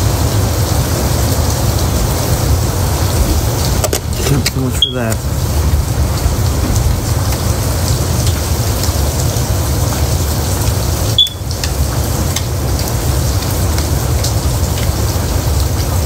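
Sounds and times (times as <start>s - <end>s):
steady rushing noise: 0.0s - 11.1s
short high beep: 4.8s - 5.1s, 11.2s - 11.5s.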